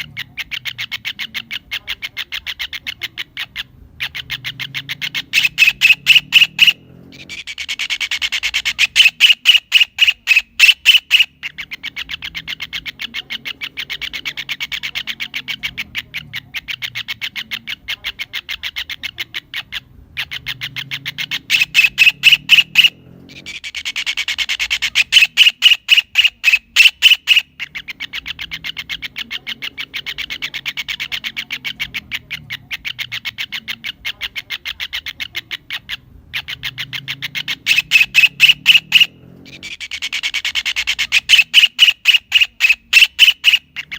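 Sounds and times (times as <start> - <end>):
kingfisher calling: 0.0 - 43.9.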